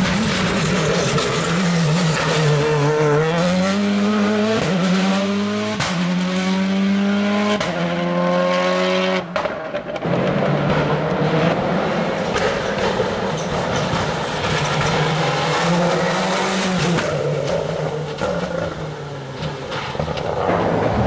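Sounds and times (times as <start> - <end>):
rally car engine accelerating: 0.0 - 21.0.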